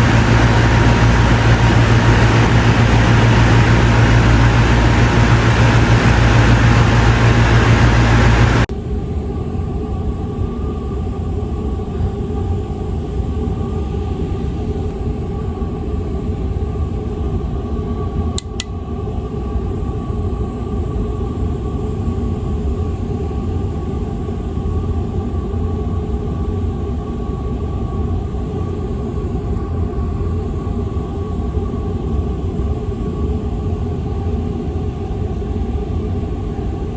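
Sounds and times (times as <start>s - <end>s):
air conditioner humming: 0.0s - 8.7s
brief clicks: 18.4s - 18.7s.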